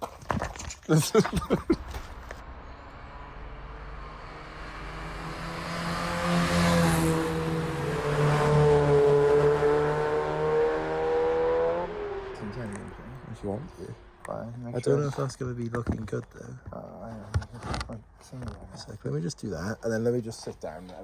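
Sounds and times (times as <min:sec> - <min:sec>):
car tyres on road: 0:00.0 - 0:19.0
car engine revving: 0:01.7 - 0:16.4.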